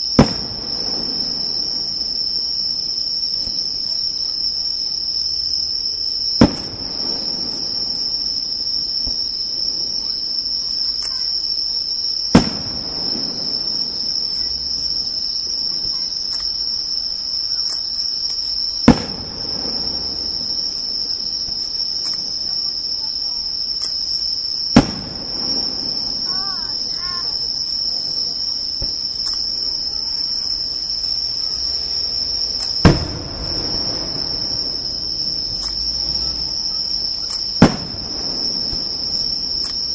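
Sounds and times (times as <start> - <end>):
firework shells bursting: 0.0 - 4.6, 6.2 - 11.5, 12.1 - 39.9
crickets chirring: 0.0 - 39.9
rolling echo: 17.6 - 39.9.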